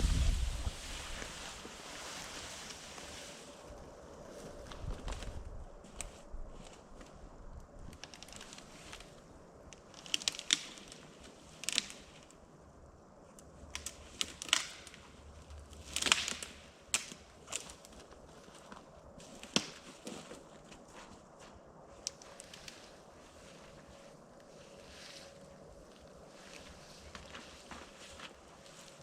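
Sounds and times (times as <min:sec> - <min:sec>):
branches cracking and snapping: 0:04.4 - 0:12.4, 0:13.4 - 0:20.8, 0:22.0 - 0:24.5, 0:25.8 - 0:29.0.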